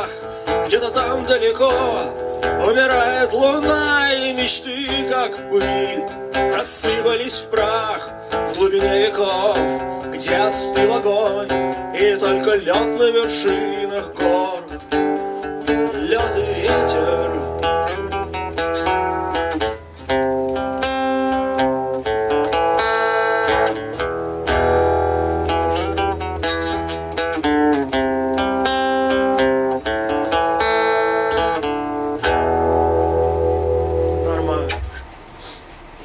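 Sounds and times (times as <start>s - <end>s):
picked guitar notes: 0.0s - 36.0s
low sustained bass note: 32.0s - 35.6s.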